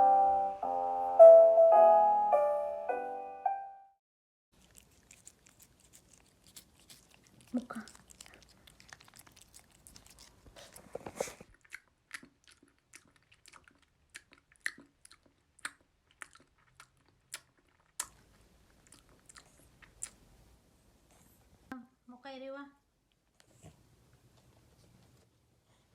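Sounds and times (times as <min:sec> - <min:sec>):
crunchy chewing: 0:04.6 - 0:20.3.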